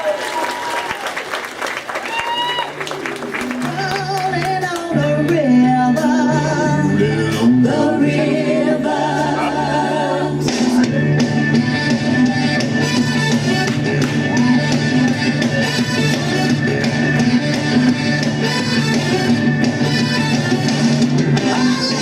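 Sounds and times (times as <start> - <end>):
person singing: 3.4 - 12.6, 21.3 - 22.0.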